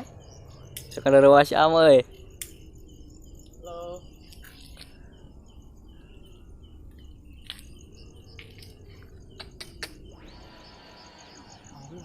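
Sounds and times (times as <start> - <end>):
crickets chirping: 0.0 - 12.0
high pulsing insect trill: 0.0 - 12.0
sharp clicks: 0.7 - 1.0, 2.4 - 2.6, 9.4 - 10.1.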